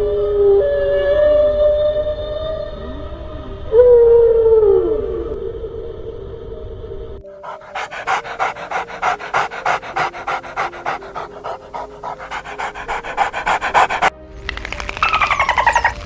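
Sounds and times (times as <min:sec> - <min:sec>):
faint background music: 0:07.3 - 0:16.0
dog panting rapidly: 0:07.4 - 0:14.1.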